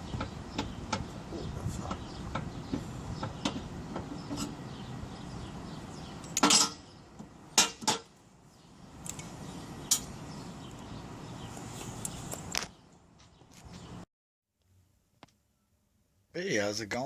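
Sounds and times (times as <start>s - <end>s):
metallic clanks: 6.2s - 6.8s.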